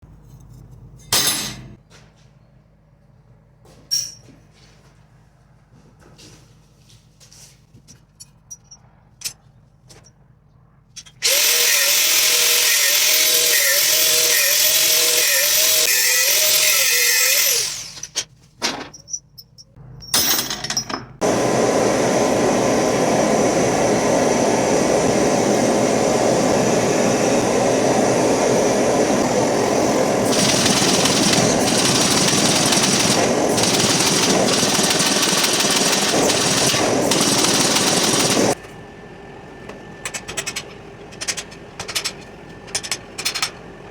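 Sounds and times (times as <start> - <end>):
power tool motor whining: 11.2 - 18.2, 21.2 - 38.6.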